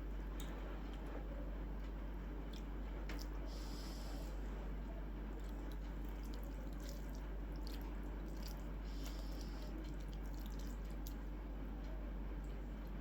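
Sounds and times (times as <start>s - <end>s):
steady low hum: 0.0s - 13.0s
wet chewing: 2.4s - 4.4s, 5.3s - 11.4s.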